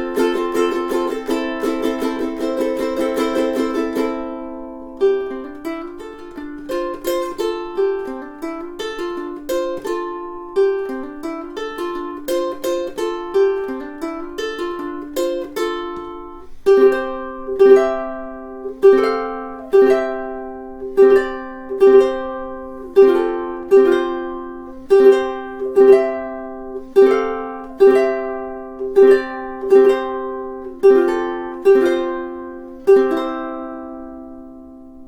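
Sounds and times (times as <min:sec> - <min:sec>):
ukulele strummed slowly: 0:00.0 - 0:35.0.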